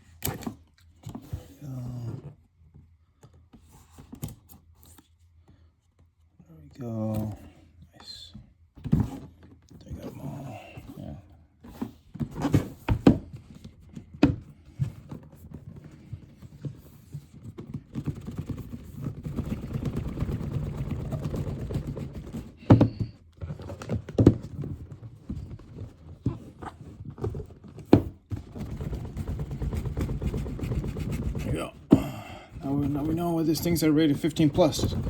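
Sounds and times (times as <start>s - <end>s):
plastic and cardboard rustling: 8.8s - 35.0s.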